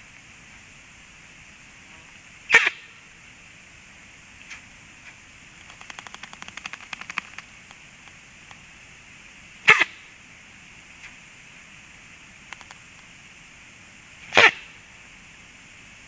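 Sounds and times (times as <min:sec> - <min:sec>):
rapid soft clicks: 0:04.4 - 0:08.6, 0:12.5 - 0:13.1
bird chick sneezing: 0:09.7 - 0:10.0, 0:14.3 - 0:14.7.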